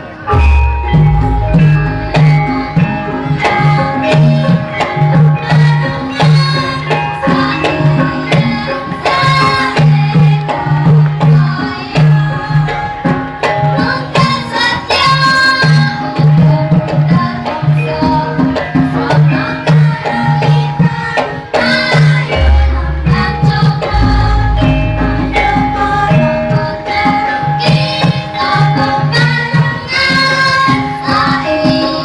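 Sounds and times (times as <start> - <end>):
hand drum strokes: 0.3 - 6.6, 21.6 - 29.4
metallophone notes ringing: 0.3 - 10.8, 21.7 - 32.0.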